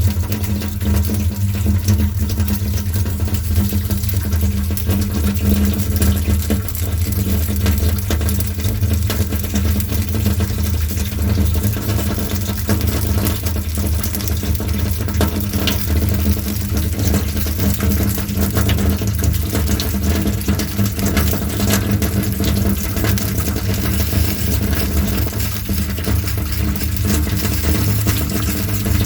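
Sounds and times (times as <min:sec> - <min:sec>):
fire crackles: 0:19.2 - 0:29.0.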